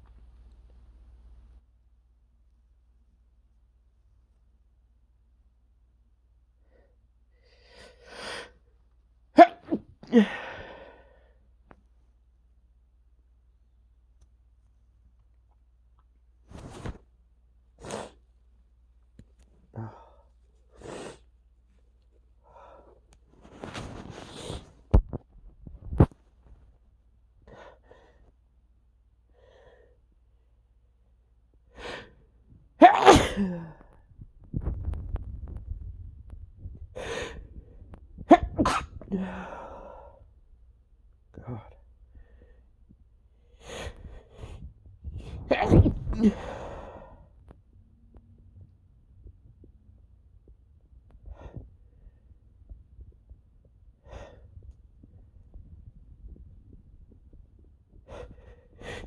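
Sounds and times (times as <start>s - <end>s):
man sneezing: 32.8s - 33.8s, 38.3s - 39.2s.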